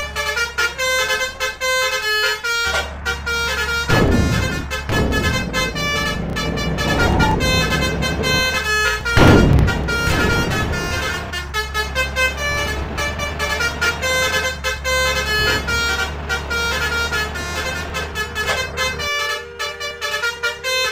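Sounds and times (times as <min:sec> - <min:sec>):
engine rumble: 0:00.0 - 0:20.9
multi-tone bus horn melody: 0:00.0 - 0:20.9
rushing noise bursts: 0:04.9 - 0:09.8.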